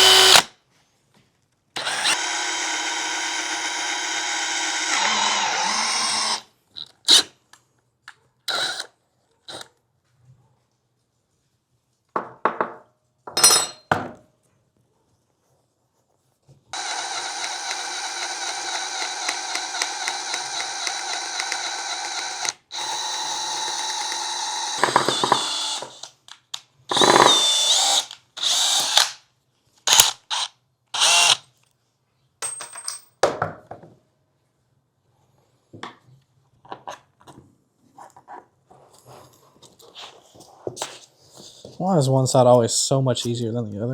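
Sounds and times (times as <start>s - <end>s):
power drill motor running: 0.0s - 0.5s, 1.8s - 6.4s, 8.5s - 8.9s, 16.8s - 26.1s, 26.9s - 29.2s, 29.9s - 31.4s
tools and parts clattering: 13.3s - 14.2s.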